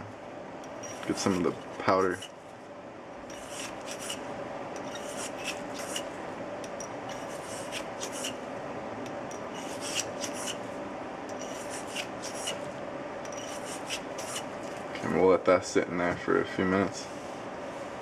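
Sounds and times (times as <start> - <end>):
cleaning rod rasping in barrel: 0.8 - 2.4, 3.3 - 4.2, 4.8 - 6.1, 7.1 - 8.4, 9.5 - 10.6, 11.3 - 12.6, 13.3 - 14.5.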